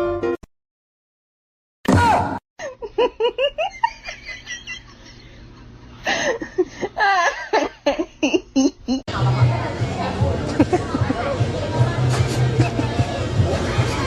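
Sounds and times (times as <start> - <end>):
high-pitched laughter: 2.6 - 5.5, 6.4 - 9.0.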